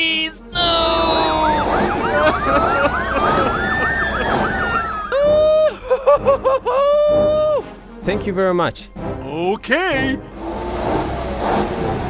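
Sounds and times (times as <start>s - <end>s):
police siren: 0.8s - 5.8s.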